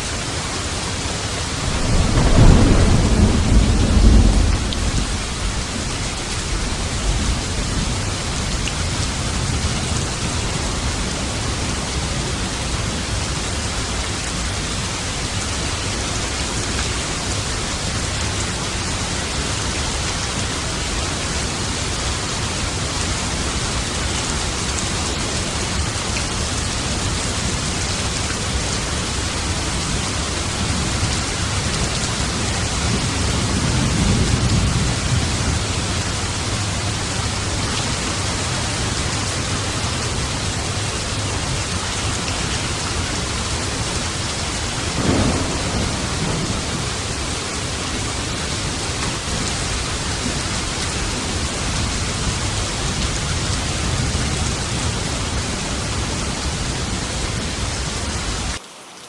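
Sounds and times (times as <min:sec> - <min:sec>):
heavy rain falling: 0:00.0 - 0:59.0
thunder rumbling: 0:01.2 - 0:14.8, 0:20.8 - 0:58.6
sharp thunderclap: 0:01.6 - 0:08.5, 0:44.8 - 0:50.5.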